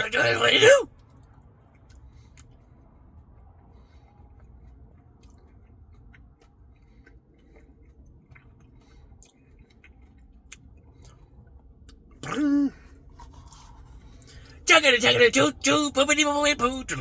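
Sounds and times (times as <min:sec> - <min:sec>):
wet chewing: 0:04.0 - 0:12.3, 0:12.9 - 0:14.6.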